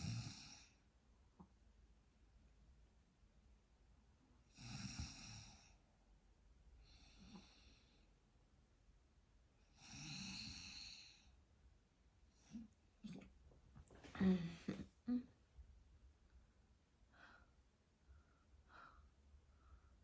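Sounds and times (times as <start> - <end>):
woman breathing with light snore: 4.5 - 5.8, 6.8 - 8.1, 9.7 - 11.4.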